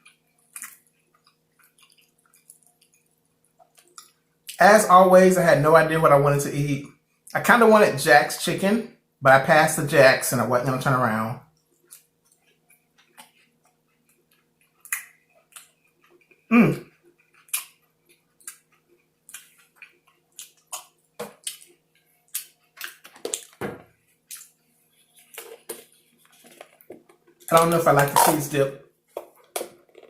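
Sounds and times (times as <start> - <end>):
chewing with wet mouth clicks: 0.0 - 4.6, 11.5 - 23.6, 24.2 - 24.6.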